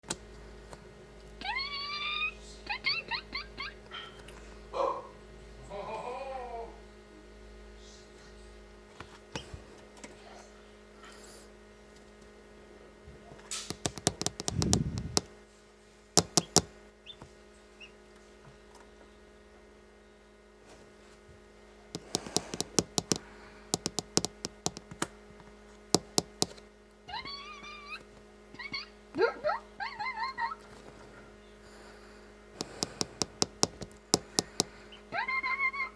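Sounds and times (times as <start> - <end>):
steady hum: 10.5 - 18.2, 19.0 - 35.9
small quick taps and clicks: 13.6 - 15.3, 22.0 - 25.1.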